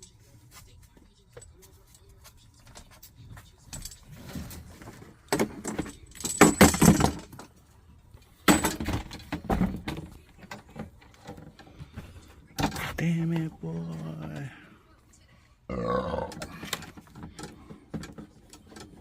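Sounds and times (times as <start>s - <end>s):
metal clinking and rattling: 1.3s - 11.7s.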